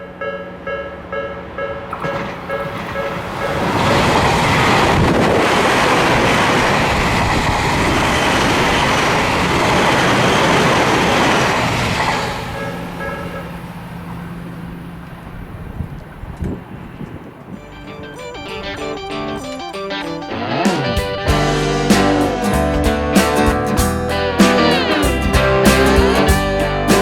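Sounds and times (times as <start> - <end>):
crossing warning bell ringing: 0.0 - 6.9, 7.8 - 15.3, 17.6 - 22.7
electric train passing: 0.0 - 27.0.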